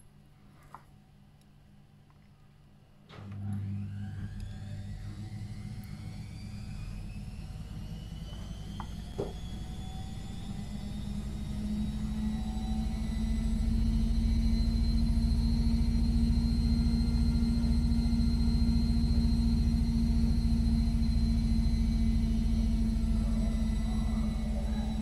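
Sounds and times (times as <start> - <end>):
electric motor humming: 3.4 - 25.0.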